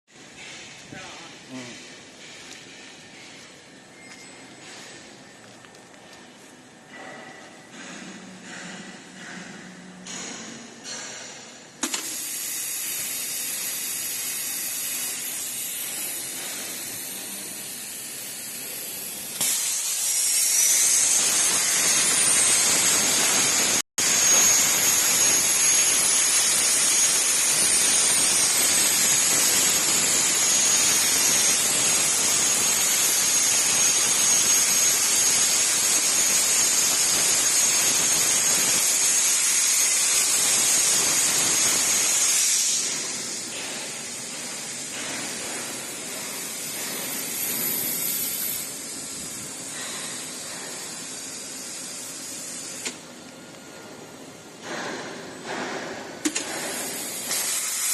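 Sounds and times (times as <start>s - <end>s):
plasma torch arc hissing: 11.5s - 53.2s, 54.6s - 57.9s.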